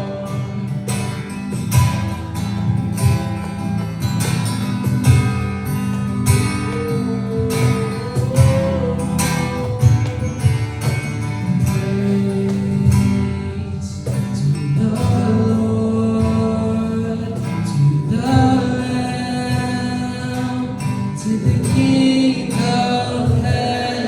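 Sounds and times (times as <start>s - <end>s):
band playing: 0.0s - 12.2s
sliding melodic lead line: 0.0s - 16.6s
drums keeping a steady beat: 0.0s - 24.0s
guitar: 0.0s - 24.0s.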